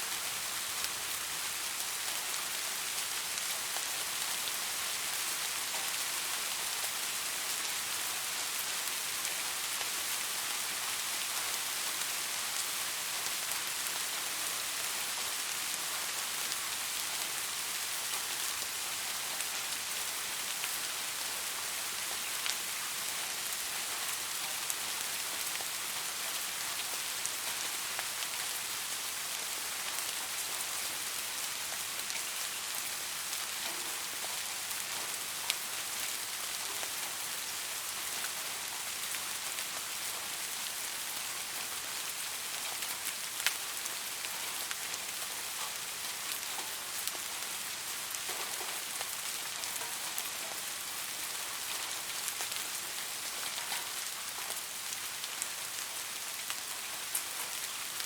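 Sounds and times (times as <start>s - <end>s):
raindrops ticking on surface: 15.1s - 58.0s.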